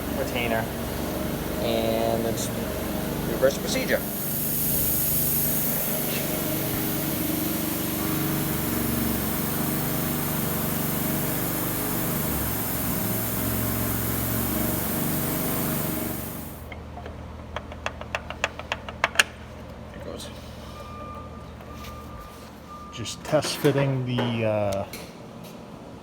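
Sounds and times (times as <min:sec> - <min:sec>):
motor running: 0:00.0 - 0:16.7.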